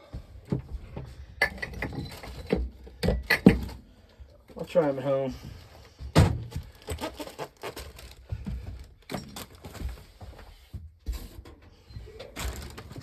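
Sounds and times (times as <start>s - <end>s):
objects being handled and set down: 5.4s - 13.0s.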